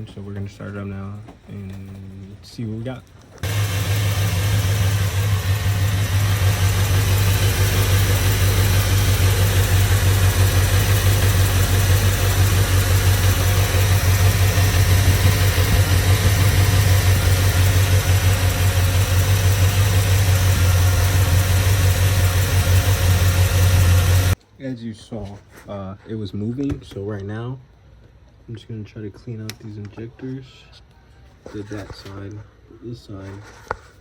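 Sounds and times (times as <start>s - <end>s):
engine idling with misfire: 3.4s - 24.4s.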